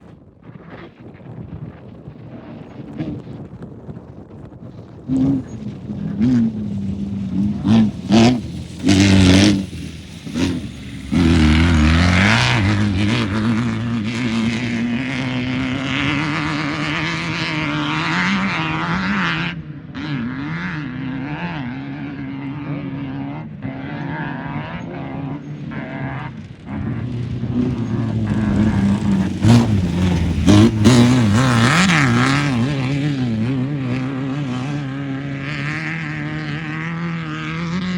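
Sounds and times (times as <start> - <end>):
race car engine revving: 4.9 - 37.9.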